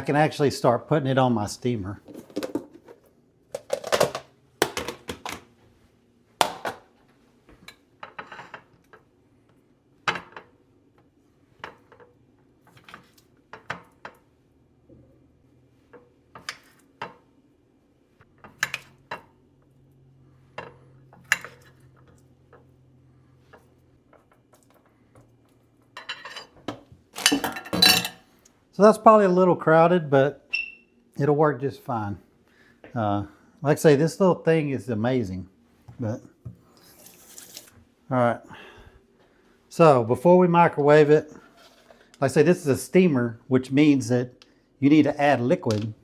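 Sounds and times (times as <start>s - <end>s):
clinks and taps of dishes: 26.0s - 28.2s.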